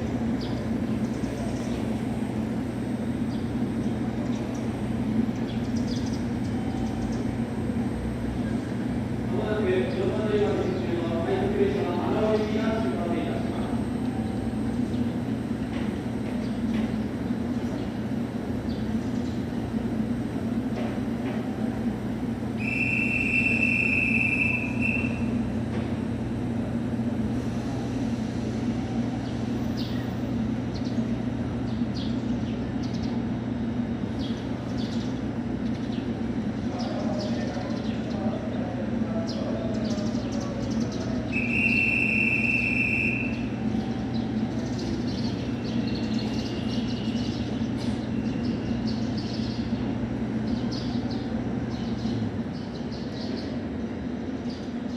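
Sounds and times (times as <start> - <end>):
low train hum: 0.0 - 54.9
long high-pitched beeps: 22.6 - 25.4, 41.3 - 43.6.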